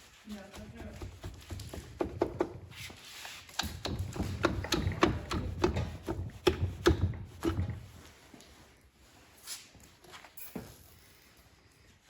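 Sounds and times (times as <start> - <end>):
sharp knocks and clicks: 1.0 - 2.6, 3.5 - 8.0.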